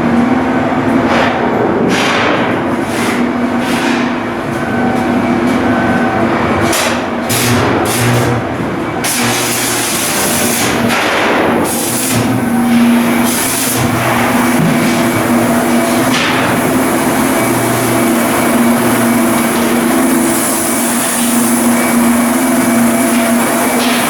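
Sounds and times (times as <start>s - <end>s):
machinery hum: 0.0s - 24.0s.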